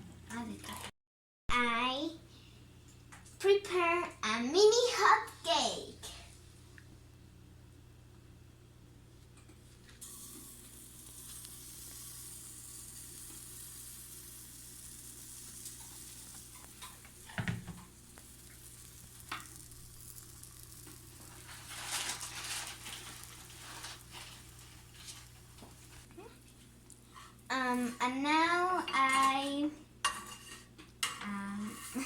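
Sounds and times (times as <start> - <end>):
batter sizzling in a frying pan: 10.0 - 27.8.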